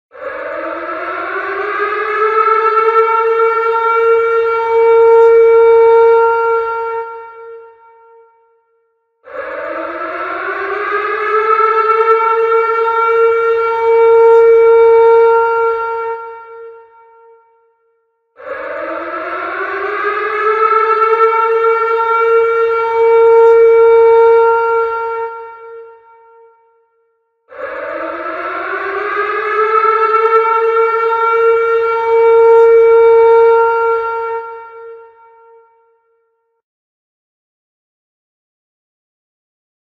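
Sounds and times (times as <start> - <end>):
tornado warning siren wail: 0.1 - 8.5, 9.2 - 17.6, 18.4 - 26.8, 27.5 - 36.1.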